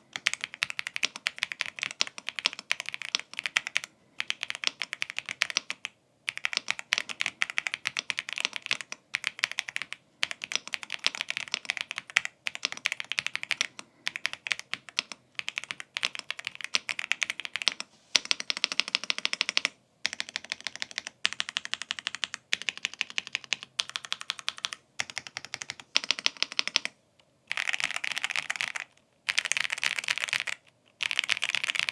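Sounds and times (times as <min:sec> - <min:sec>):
mechanical keyboard typing: 0:00.1 - 0:31.9.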